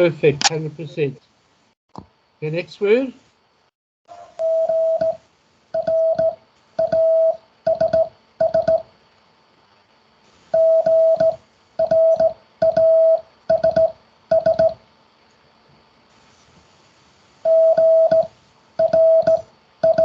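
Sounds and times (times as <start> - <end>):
morse code beeps: 4.4 - 5.2, 5.8 - 8.8, 10.6 - 14.8, 17.5 - 20.0.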